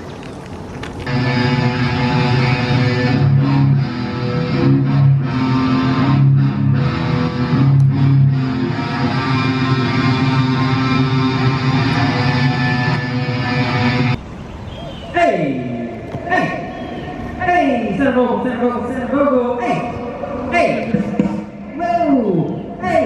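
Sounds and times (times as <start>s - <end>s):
bass line: 1.1s - 14.2s
electric guitar chords: 1.1s - 14.2s.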